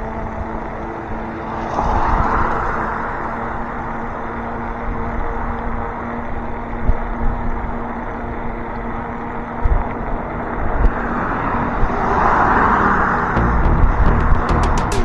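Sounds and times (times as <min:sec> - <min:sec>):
low rumbles: 0:13.4 - 0:15.0.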